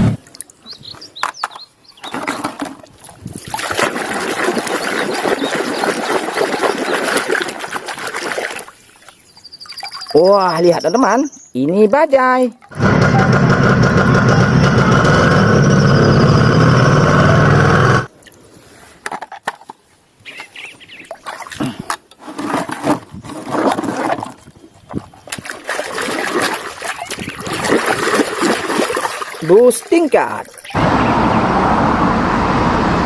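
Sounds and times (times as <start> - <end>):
water splashing and dripping: 2.0 - 10.8, 21.0 - 21.8, 23.6 - 30.8
water rushing in a stream: 2.6 - 10.4, 23.4 - 30.9.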